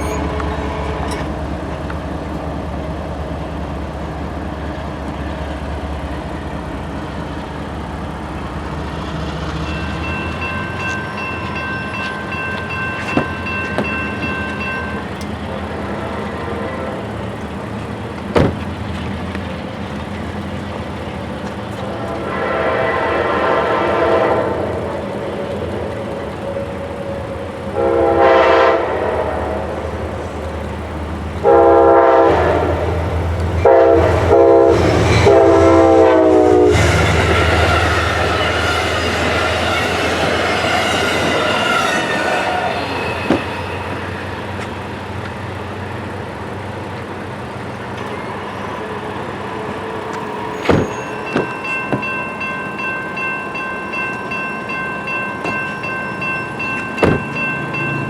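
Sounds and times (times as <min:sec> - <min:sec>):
train rolling past: 0:00.0 - 0:58.0
locomotive air horn blasts: 0:21.9 - 0:24.7, 0:27.7 - 0:29.8, 0:31.4 - 0:33.0, 0:33.6 - 0:43.4.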